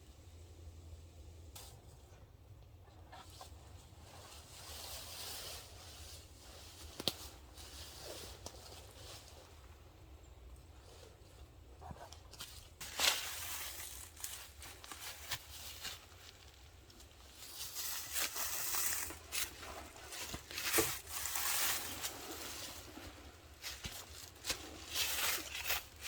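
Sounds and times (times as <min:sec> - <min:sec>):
tarp crinkling and rustling: 0:12.4 - 0:26.0.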